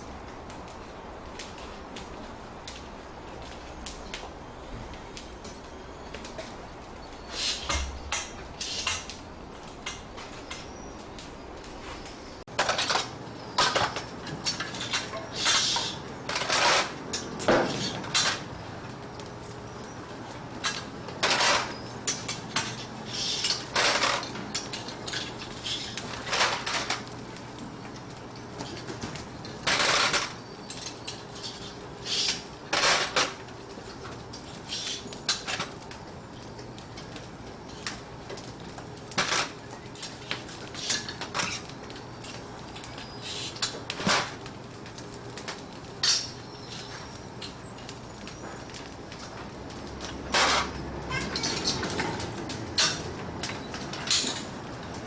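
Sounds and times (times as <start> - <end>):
dishes and utensils clattering: 46.0 - 47.6, 50.1 - 54.6.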